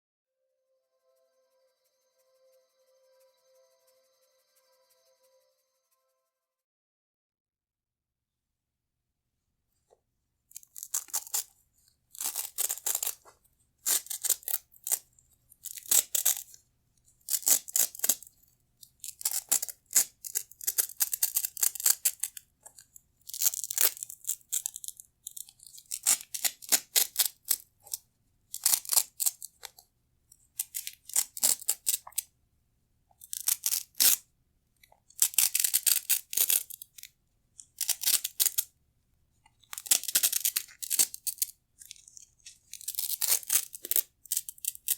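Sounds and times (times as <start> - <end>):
velcro straps rasping: 12.1 - 13.2, 13.9 - 15.0, 30.6 - 32.2, 33.2 - 34.2, 35.2 - 37.1, 37.7 - 38.7, 39.7 - 44.9.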